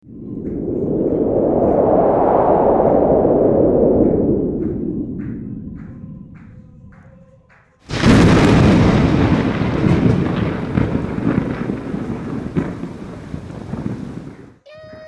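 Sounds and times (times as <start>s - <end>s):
thunder rumbling: 0.0s - 7.0s, 7.9s - 15.0s
wind rushing: 0.0s - 15.0s
rain: 7.9s - 14.6s.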